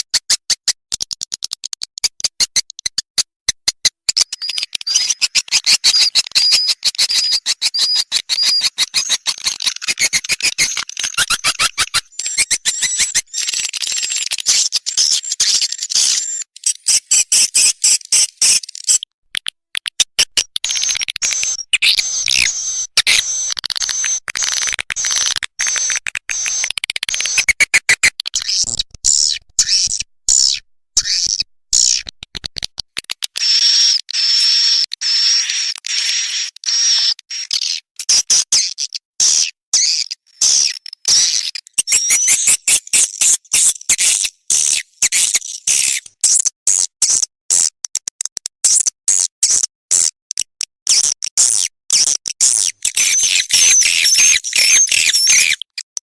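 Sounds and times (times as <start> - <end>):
swiftlet chirps and twittering: 4.1 - 19.1, 20.2 - 32.0, 39.8 - 46.0, 52.5 - 55.8.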